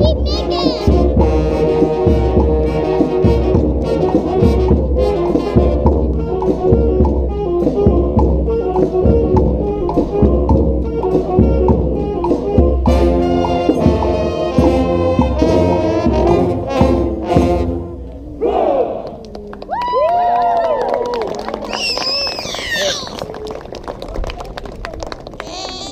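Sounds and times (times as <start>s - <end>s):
steady drumbeat: 0.0s - 17.8s
brass band playing: 0.0s - 18.7s.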